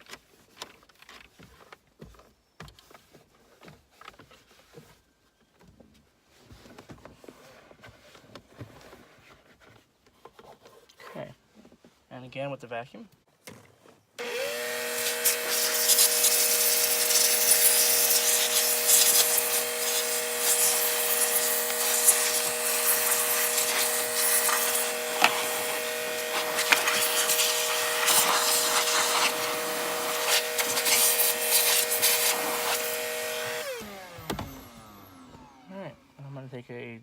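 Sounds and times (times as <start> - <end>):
vacuum cleaner running: 14.2 - 36.1
vacuum nozzle clicks and rubbing: 15.0 - 34.6.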